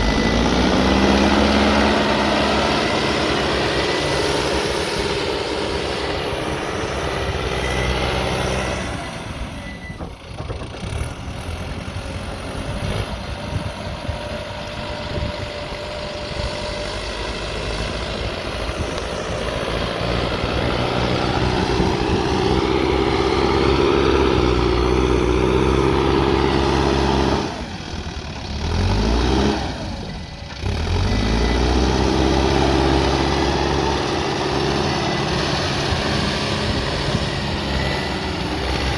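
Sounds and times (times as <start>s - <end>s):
diesel engine revving: 0.0s - 38.9s.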